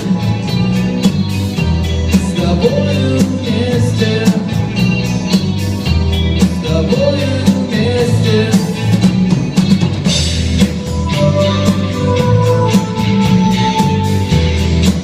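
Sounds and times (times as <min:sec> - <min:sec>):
bass and guitar: 0:00.0 - 0:15.0
drum kit steady beat: 0:00.0 - 0:15.0
wavering held notes: 0:10.1 - 0:15.0.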